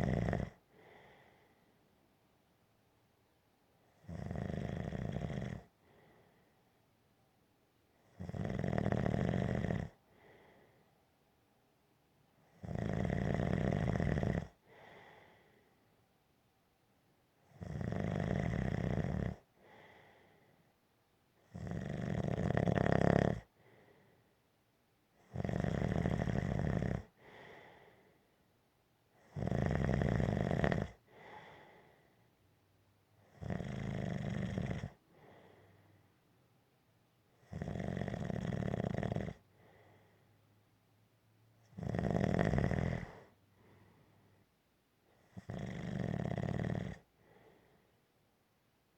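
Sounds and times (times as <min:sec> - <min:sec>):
gentle snoring: 0:00.0 - 0:01.6, 0:03.9 - 0:06.5, 0:08.0 - 0:10.6, 0:12.4 - 0:15.7, 0:17.4 - 0:20.6, 0:21.4 - 0:24.1, 0:25.2 - 0:28.1, 0:29.2 - 0:32.2, 0:33.2 - 0:35.9, 0:37.3 - 0:40.2, 0:41.6 - 0:44.1, 0:45.1 - 0:47.8
faint short breath: 0:00.7 - 0:01.8, 0:05.8 - 0:06.7, 0:10.1 - 0:11.0, 0:14.6 - 0:15.8, 0:19.6 - 0:20.7, 0:27.2 - 0:28.4, 0:31.1 - 0:32.3, 0:35.1 - 0:36.1, 0:39.5 - 0:40.4, 0:43.2 - 0:44.4, 0:47.2 - 0:48.0.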